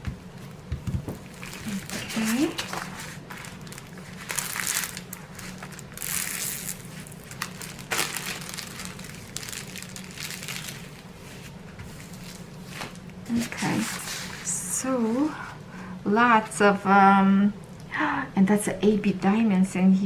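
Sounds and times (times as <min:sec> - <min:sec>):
plastic packaging crinkling: 0:01.1 - 0:14.5.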